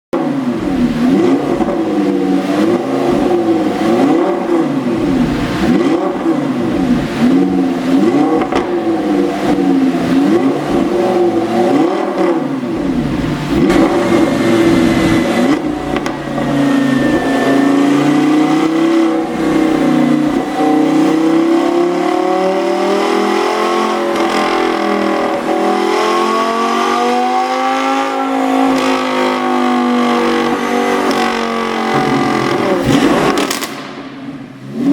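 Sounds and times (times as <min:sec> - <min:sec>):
car engine revving: 0:00.2 - 0:34.9
exhaust pops: 0:08.3 - 0:08.9, 0:12.0 - 0:16.5, 0:31.0 - 0:34.6.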